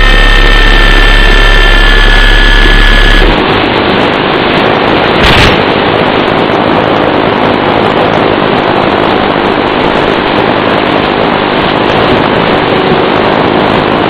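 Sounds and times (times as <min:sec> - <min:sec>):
rc plane motor humming: 0:00.0 - 0:03.4
propeller rushing noise: 0:00.0 - 0:14.0.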